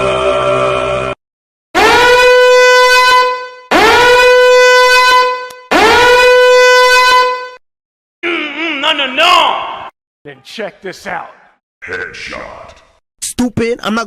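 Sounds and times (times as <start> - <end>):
air horn blasts: 1.8 - 7.6.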